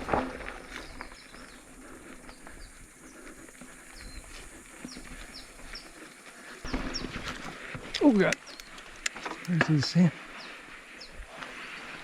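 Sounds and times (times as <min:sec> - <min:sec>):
bike ticking: 0:00.0 - 0:12.0
small birds chirping: 0:00.4 - 0:12.0.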